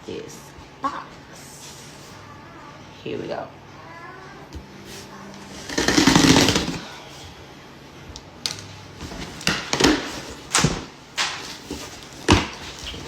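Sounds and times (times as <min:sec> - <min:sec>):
rustling cardboard and packing: 0:04.9 - 0:07.2, 0:09.0 - 0:13.0.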